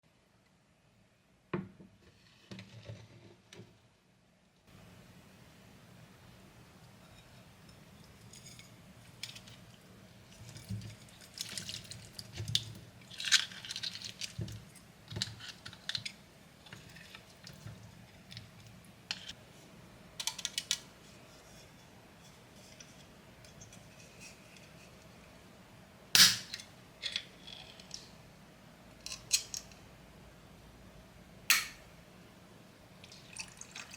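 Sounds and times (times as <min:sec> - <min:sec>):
wet crackles and clicks of food: 0:10.5 - 0:19.4.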